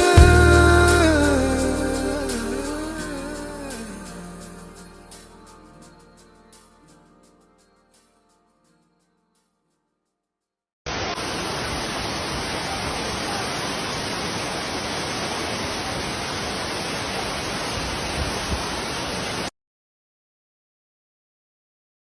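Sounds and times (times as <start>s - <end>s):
waterfall rushing: 10.9s - 19.5s.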